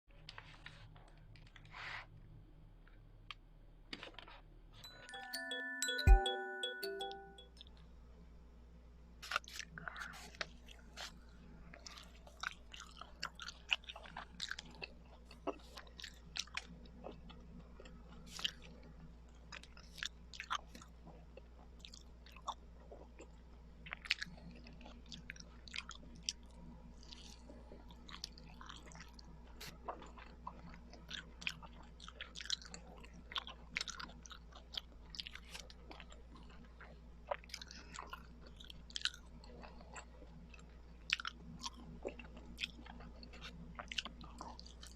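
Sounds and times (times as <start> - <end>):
chewing with mouth clicks: 9.2 - 44.9.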